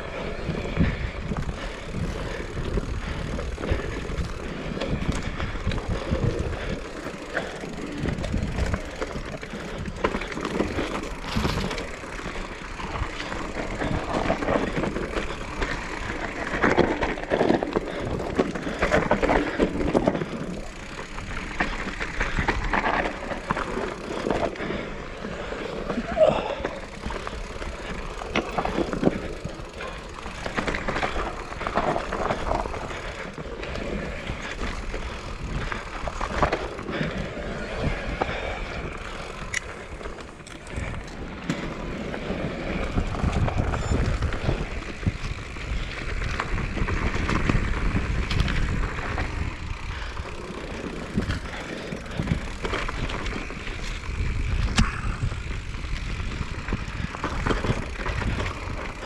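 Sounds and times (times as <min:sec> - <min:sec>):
bike clattering over bumps: 0:00.0 - 0:59.0
bike tyres on dirt: 0:00.0 - 0:59.0
wind rumble on microphone: 0:40.7 - 0:50.2, 0:50.8 - 0:59.0.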